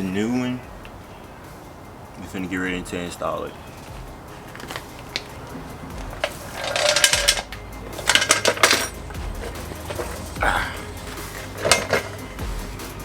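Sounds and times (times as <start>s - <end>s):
tools and parts clattering: 3.8s - 5.4s, 6.0s - 10.4s, 11.6s - 12.2s.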